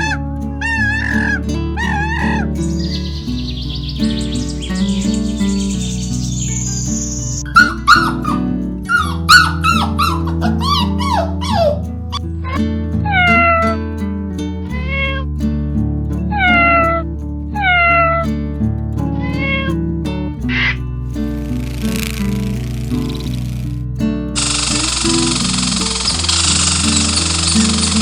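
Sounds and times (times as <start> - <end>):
cat meowing: 0.0 - 2.5, 12.4 - 13.8, 14.7 - 15.2, 16.3 - 17.0, 17.6 - 18.3, 19.2 - 19.8.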